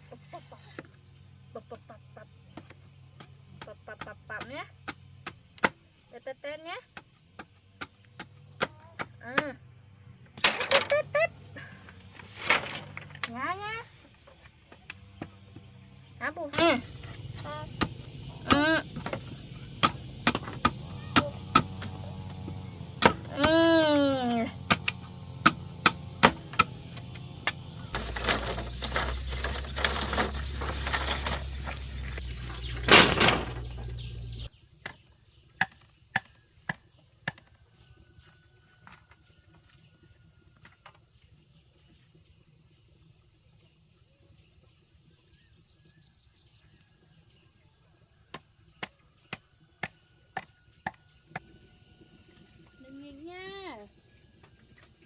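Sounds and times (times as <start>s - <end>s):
crickets chirring: 0.0s - 55.0s
sharp knocks: 17.7s - 23.6s.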